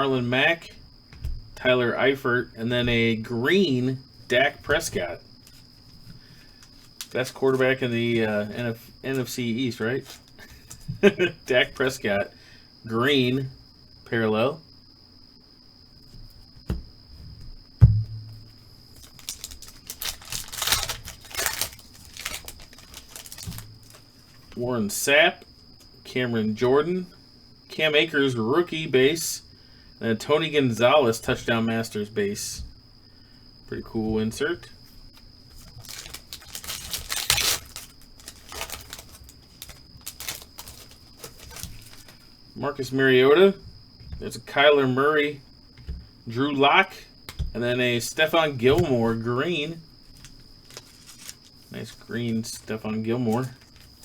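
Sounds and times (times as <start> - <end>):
foil pack tearing and crinkling: 6.6 - 7.3, 18.9 - 24.4, 35.6 - 42.2, 50.1 - 52.7
sharp knocks: 17.8 - 18.5
cards sliding and handled: 50.2 - 52.6.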